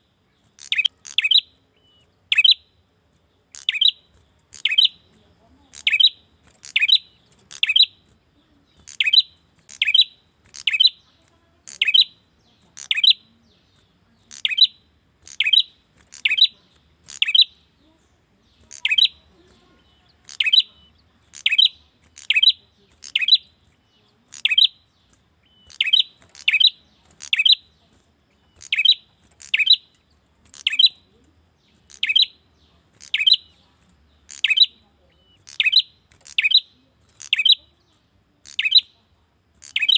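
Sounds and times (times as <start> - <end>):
bird chirping sharply: 0.5 - 2.7, 3.5 - 5.1, 5.7 - 8.2, 8.8 - 17.8, 18.5 - 33.6, 34.2 - 37.8, 38.4 - 39.0, 39.6 - 39.9.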